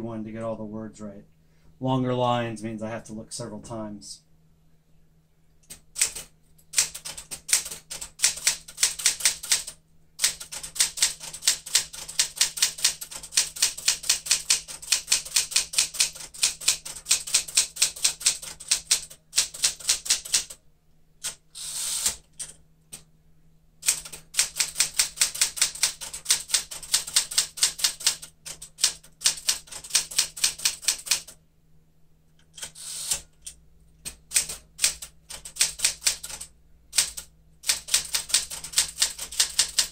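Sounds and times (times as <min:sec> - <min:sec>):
manual typewriter typing: 0:05.7 - 0:20.6, 0:21.2 - 0:22.6, 0:23.8 - 0:31.4, 0:32.4 - 0:39.9.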